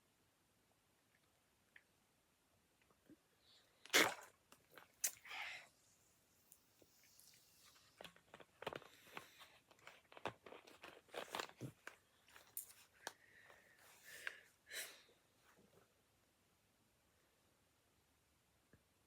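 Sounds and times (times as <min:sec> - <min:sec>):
sipping through a straw: 0:03.9 - 0:05.4.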